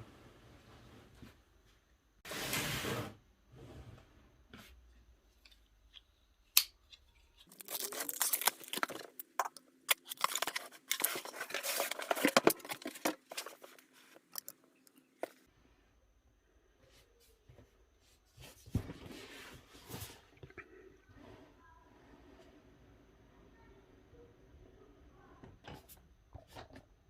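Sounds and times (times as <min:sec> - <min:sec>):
packaging rasping and crinkling: 0:07.4 - 0:14.6.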